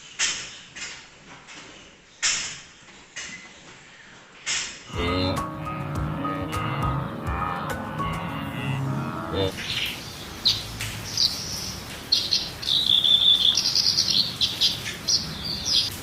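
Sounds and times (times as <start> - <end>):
animal chirping: 12.1 - 15.9.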